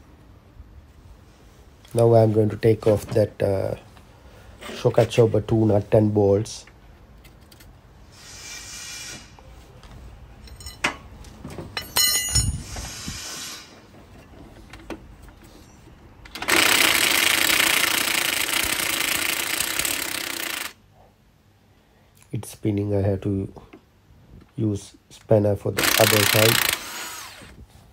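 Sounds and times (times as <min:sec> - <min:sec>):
brief hissing: 0:08.1 - 0:09.4, 0:12.6 - 0:13.9
metal tool clinks: 0:10.4 - 0:10.9, 0:11.8 - 0:12.6.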